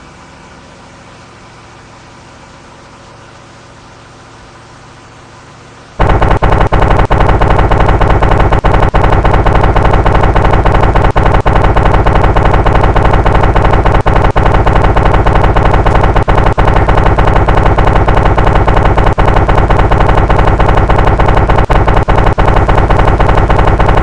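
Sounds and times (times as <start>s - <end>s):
two-stroke engine rattling buzz: 4.6s - 24.0s.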